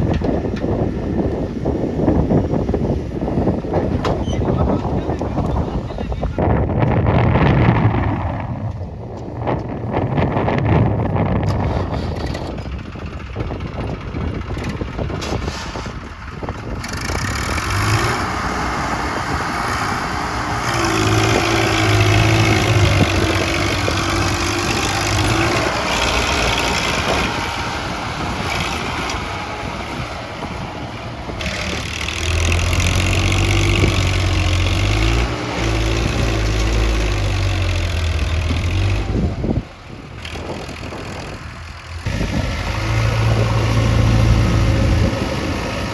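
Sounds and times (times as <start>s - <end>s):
backhoe diesel engine revving: 9.9s - 45.9s.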